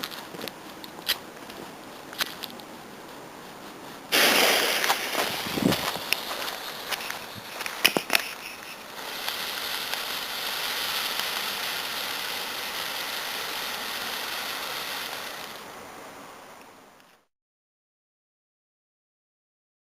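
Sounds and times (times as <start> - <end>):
firework crackles: 2.2 - 15.7
firework hissing sparks: 4.0 - 15.7.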